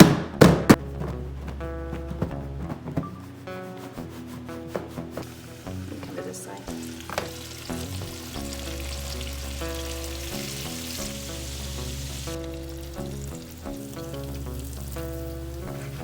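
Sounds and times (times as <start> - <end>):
knock: 0.0 - 0.8
background music: 0.0 - 16.0
food sizzling in a pan: 5.2 - 16.0.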